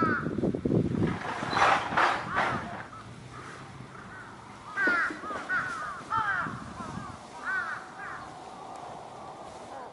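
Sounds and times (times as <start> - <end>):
crow cawing: 0.0 - 0.4, 3.3 - 8.4.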